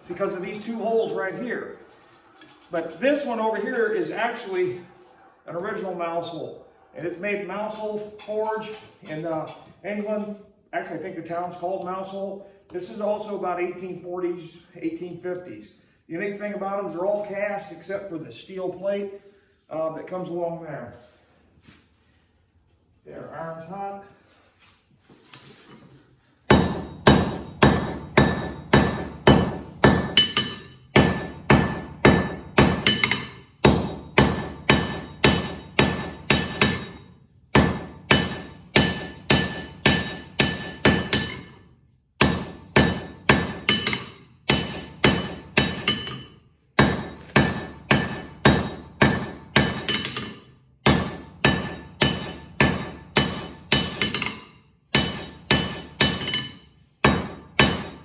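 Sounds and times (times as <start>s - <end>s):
hammer striking steel on anvil: 26.5s - 41.6s, 42.2s - 58.0s.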